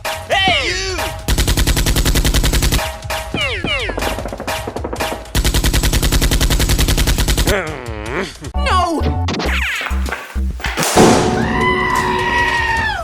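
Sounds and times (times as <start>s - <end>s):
rapid automatic gunfire: 1.3s - 2.9s, 5.3s - 7.5s.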